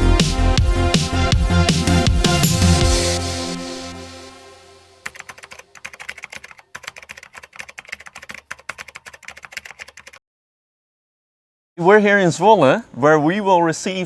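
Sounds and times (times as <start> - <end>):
electronic music sting: 0.2 - 5.0
computer keyboard typing: 5.0 - 10.2.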